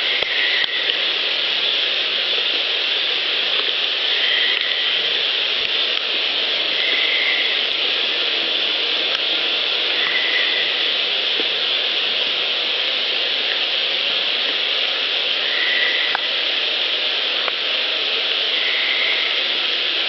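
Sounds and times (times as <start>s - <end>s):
recorder noise hiss: 0.0s - 20.0s
faint ticks: 0.2s - 1.0s, 3.5s - 4.8s, 9.1s - 10.4s, 16.1s - 16.3s.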